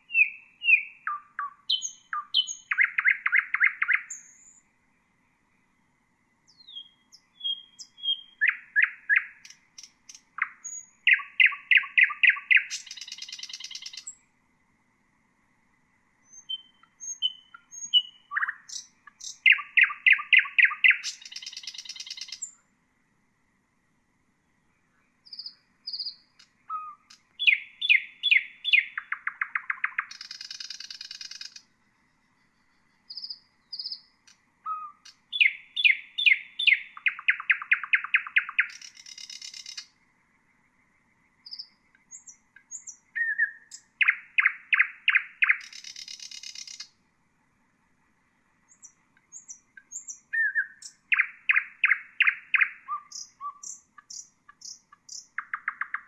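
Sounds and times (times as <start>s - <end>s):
nightingale singing: 0.0s - 14.4s, 16.1s - 22.8s, 24.5s - 47.1s, 47.8s - 56.0s.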